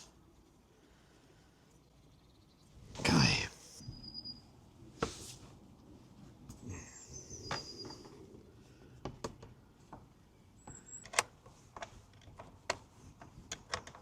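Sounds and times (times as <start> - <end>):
faint high chirps: 3.8 - 4.7, 6.6 - 8.4.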